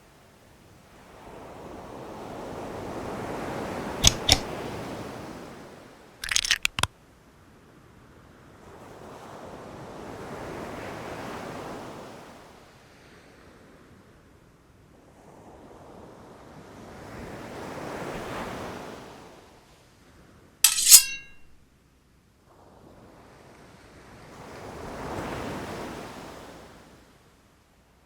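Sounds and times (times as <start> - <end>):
bright ringing clink: 20.7 - 21.6.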